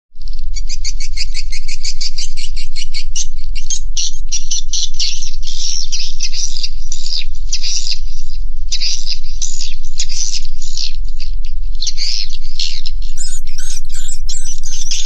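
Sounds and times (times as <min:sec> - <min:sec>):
steady low hum: 0:13.2 - 0:15.0
swiftlets chirping: 0:13.2 - 0:15.0
swiftlets twittering: 0:13.2 - 0:15.0.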